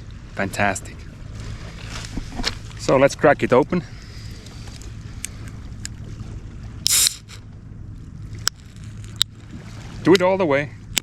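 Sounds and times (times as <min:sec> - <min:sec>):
low background rumble: 0:00.0 - 0:11.0
hiss of escaping gas: 0:06.9 - 0:07.4.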